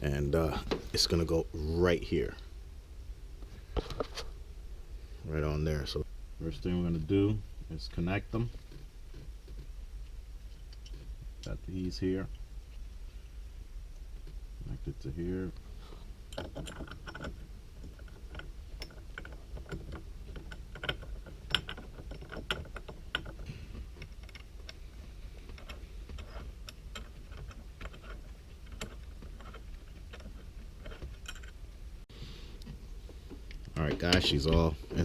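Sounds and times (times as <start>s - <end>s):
metal parts clicking and tapping: 16.3s - 31.7s, 33.5s - 35.0s.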